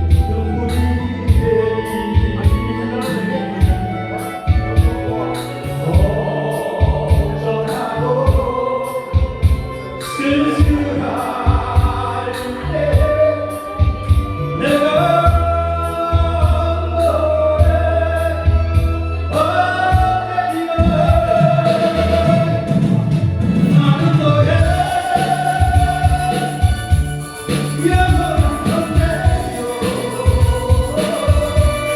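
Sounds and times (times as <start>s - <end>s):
upbeat song with singing: 0.0s - 31.9s
fast drum beat: 20.8s - 31.9s.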